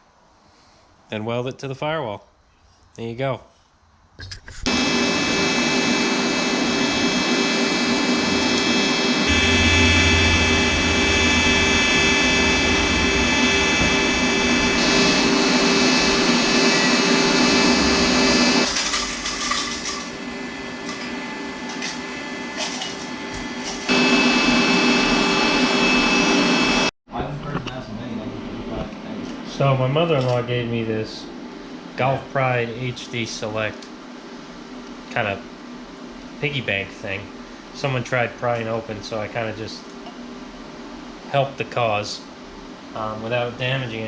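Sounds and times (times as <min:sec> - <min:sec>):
power tool motor running: 0:04.7 - 0:18.8, 0:23.3 - 0:26.9.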